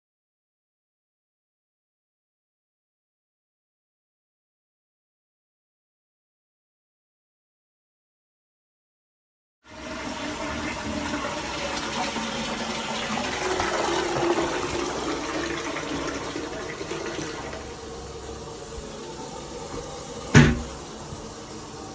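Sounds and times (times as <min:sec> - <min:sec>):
toilet flushing: 0:09.7 - 0:21.9
toilet tank refilling: 0:09.7 - 0:21.9.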